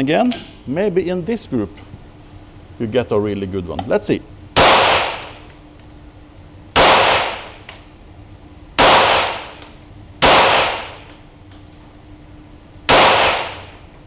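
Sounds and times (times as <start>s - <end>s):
pistol shots with echo: 4.6s - 5.3s, 6.8s - 7.6s, 8.8s - 9.6s, 10.2s - 11.0s, 12.9s - 13.7s.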